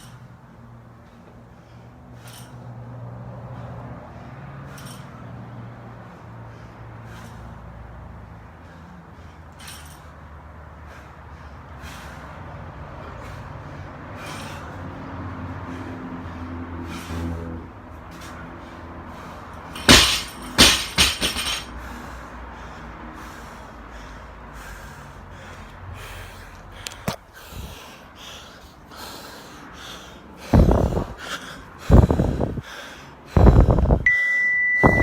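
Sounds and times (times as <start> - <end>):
person breathing heavily: 0.1 - 20.0, 20.6 - 34.1
sharp clatters: 19.7 - 21.7
steady electronic beep: 34.1 - 35.0.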